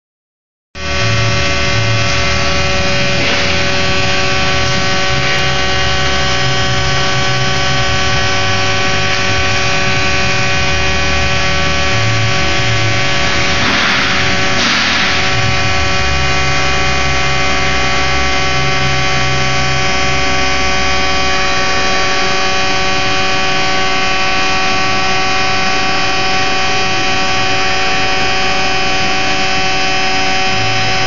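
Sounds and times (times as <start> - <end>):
welding machine hum: 0.8 - 31.0.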